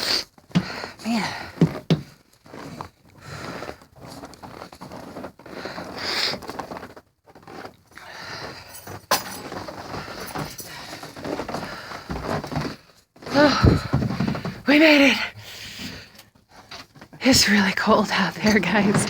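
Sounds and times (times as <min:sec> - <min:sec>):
handling noise: 0:16.6 - 0:19.0.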